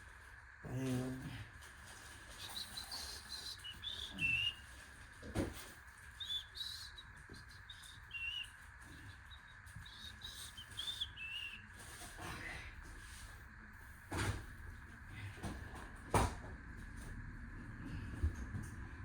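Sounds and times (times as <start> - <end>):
bird chirping and whistling: 2.4 - 4.6, 6.2 - 11.7.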